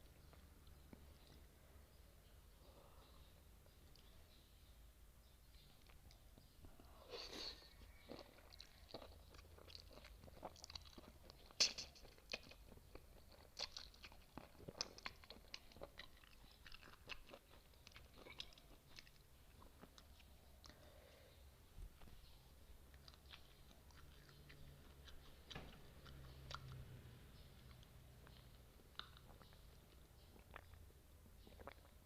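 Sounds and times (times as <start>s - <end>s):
close chewing and crunching: 5.5s - 21.2s, 22.0s - 32.0s
wet mouth clicks: 11.2s - 12.5s, 27.7s - 30.8s.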